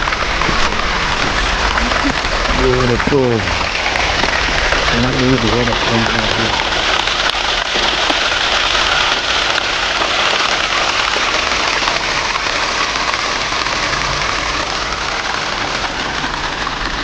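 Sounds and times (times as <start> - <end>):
water rushing: 0.0 - 17.0.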